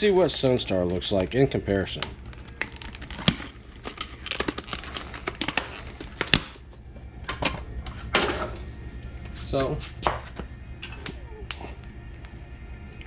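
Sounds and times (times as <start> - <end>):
packaging crinkling: 0.6 - 6.7.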